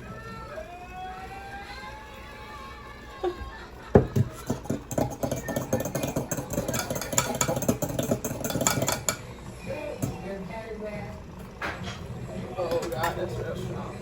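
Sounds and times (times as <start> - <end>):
coffee machine pump buzzing: 3.3 - 14.0.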